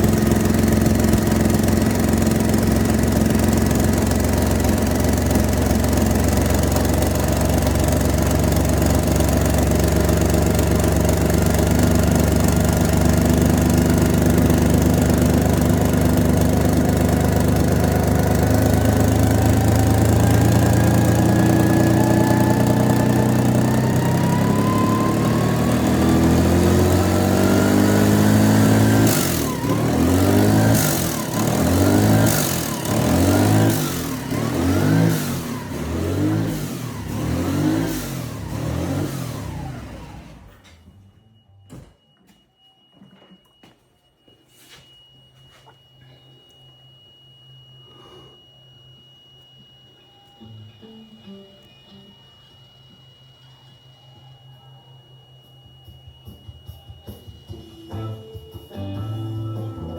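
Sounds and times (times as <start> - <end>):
car engine running: 0.0 - 40.6
thin whine rising in pitch: 17.4 - 41.8, 44.7 - 59.9.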